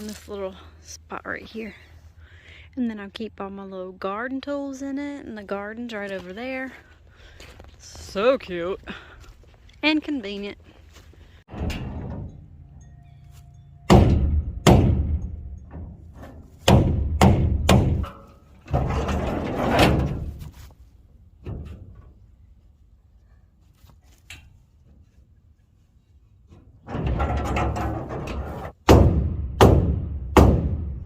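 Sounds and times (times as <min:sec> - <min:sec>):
heavy thunks and bangs: 0:11.5 - 0:12.6, 0:13.8 - 0:20.4, 0:26.9 - 0:31.0.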